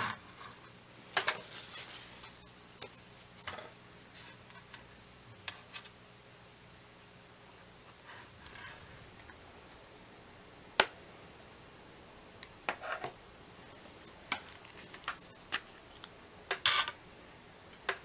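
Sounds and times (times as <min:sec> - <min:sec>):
small items clicking and tapping: 0:14.0 - 0:17.0.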